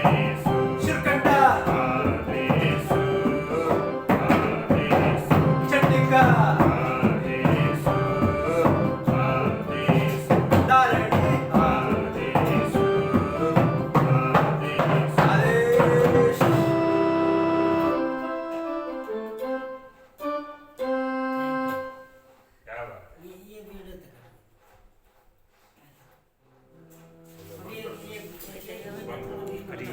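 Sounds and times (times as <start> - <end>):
hand drum rhythm: 0.0 - 18.1
keyboard melody with sliding notes: 0.0 - 22.3.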